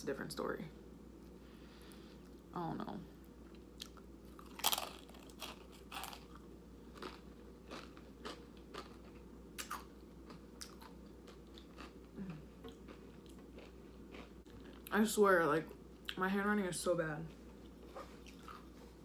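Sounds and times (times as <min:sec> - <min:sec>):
person crunching chips: 0:03.8 - 0:14.8.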